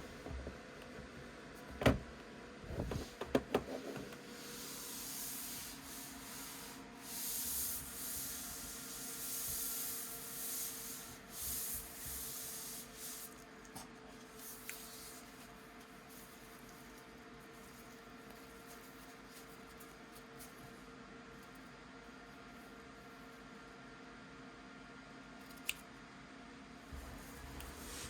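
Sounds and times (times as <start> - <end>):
rustling and rubbing: 2.8 - 20.7, 27.0 - 28.0.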